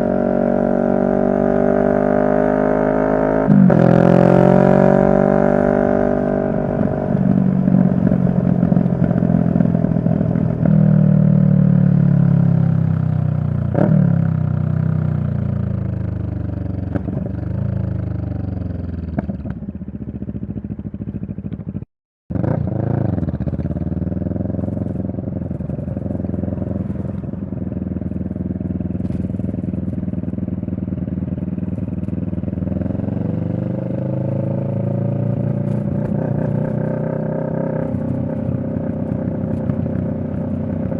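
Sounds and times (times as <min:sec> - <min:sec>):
motorcycle engine while riding: 0:00.0 - 0:40.9.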